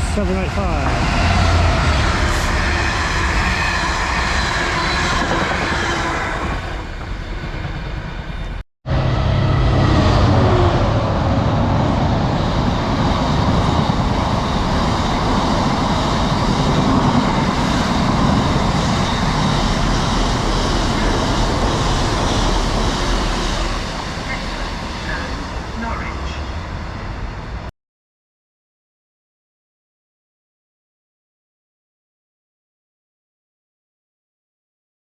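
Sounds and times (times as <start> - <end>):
train wheels on rails: 0.0 - 8.6
diesel locomotive engine: 0.0 - 27.7.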